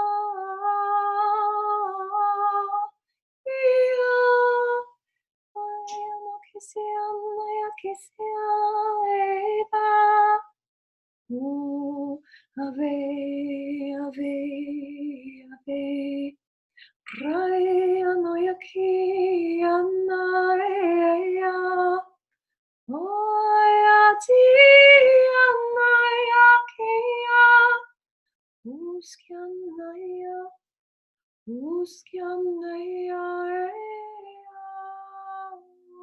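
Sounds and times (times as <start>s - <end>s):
woman singing wordless tones: 0.0s - 5.0s, 5.6s - 10.5s, 11.3s - 16.4s, 22.9s - 27.9s, 28.7s - 30.6s, 31.5s - 36.0s.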